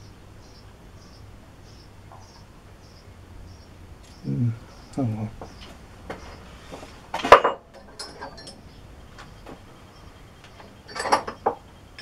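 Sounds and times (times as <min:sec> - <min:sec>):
metallic clatter: 0:07.2 - 0:08.7
drill bits clinking and rattling: 0:07.3 - 0:08.7.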